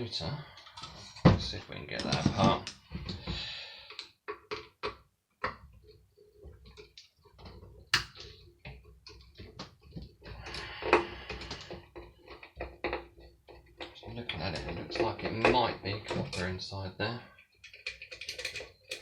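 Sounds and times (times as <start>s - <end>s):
metal parts clicking and knocking: 17.4s - 19.0s
metal parts clattering: 17.6s - 19.0s.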